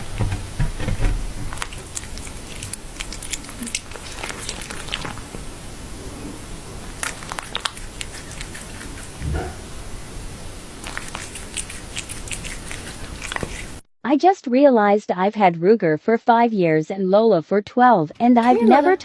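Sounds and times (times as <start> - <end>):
pet chewing crunchy food: 0.0 - 13.8.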